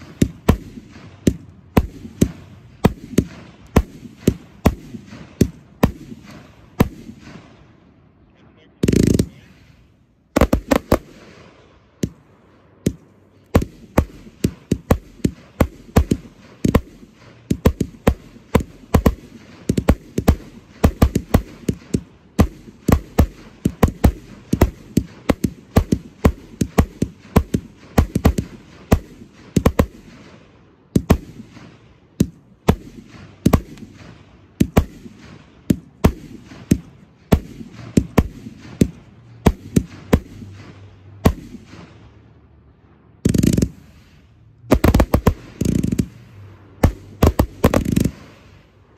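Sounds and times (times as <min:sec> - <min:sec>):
fireworks bangs: 0:00.0 - 0:48.9.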